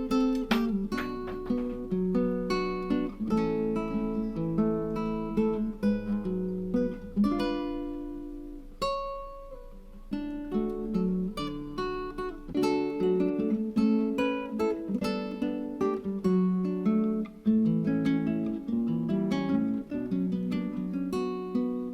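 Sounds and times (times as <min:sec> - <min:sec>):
acoustic guitar music: 0:00.0 - 0:21.9.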